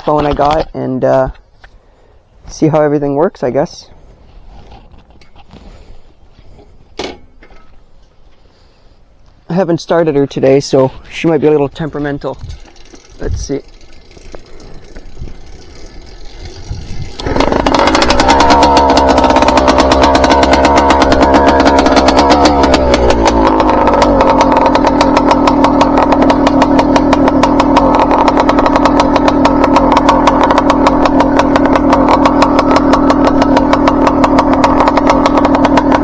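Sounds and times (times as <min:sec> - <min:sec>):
small two-stroke engine idling: 0:12.4 - 0:36.0.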